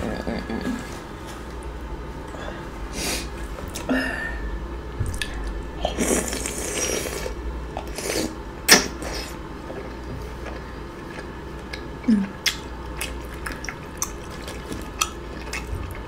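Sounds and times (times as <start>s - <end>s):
wet eating mouth noises: 5.1s - 16.0s.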